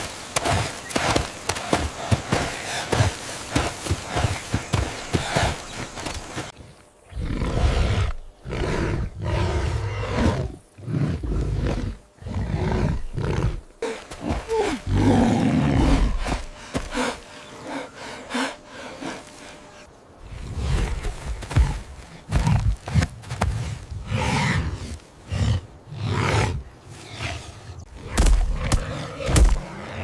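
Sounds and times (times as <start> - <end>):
animal roaring and growling: 7.1 - 16.3, 24.0 - 30.0.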